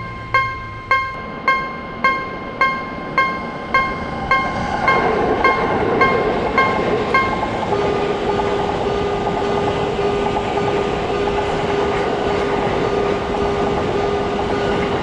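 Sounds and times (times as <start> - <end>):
mid-pitched tone: 0.0 - 4.5
train rumbling past: 0.0 - 15.0.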